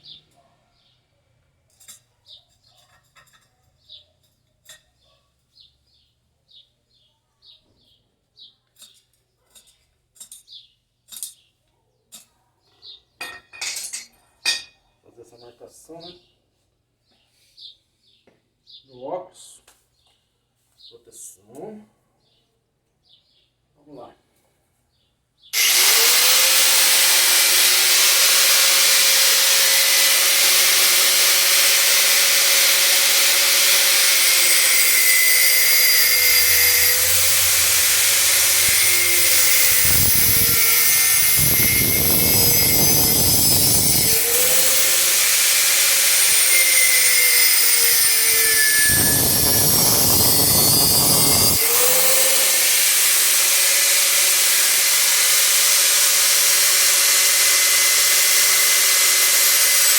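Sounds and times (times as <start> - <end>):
angle grinder cutting steel: 25.6 - 59.9.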